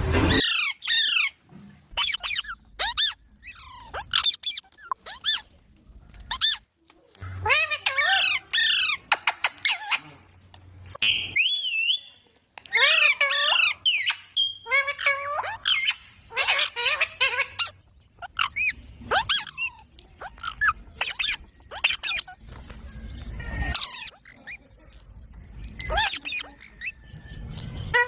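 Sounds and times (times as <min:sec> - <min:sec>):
baby parrots squawking: 0:00.3 - 0:05.5, 0:06.2 - 0:06.6, 0:07.2 - 0:10.3, 0:12.7 - 0:22.6, 0:23.2 - 0:24.6, 0:25.8 - 0:27.0.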